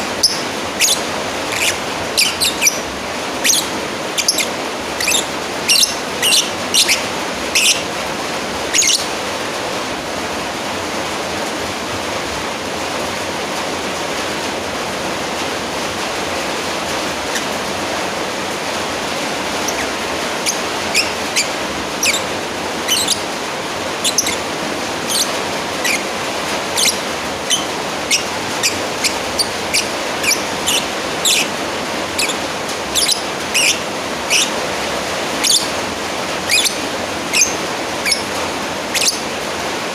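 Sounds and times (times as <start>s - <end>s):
lovebird shrill chirps: 0.0s - 7.9s, 8.7s - 9.1s, 19.6s - 23.3s, 24.0s - 26.1s, 26.7s - 31.5s, 32.2s - 34.6s, 35.4s - 35.8s, 36.4s - 38.3s, 38.9s - 39.3s.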